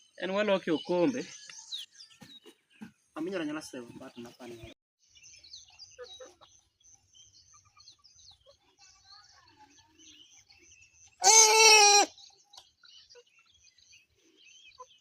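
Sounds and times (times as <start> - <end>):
faint bird chirping: 0.0 - 15.0
loud drawn-out animal call: 11.2 - 12.2.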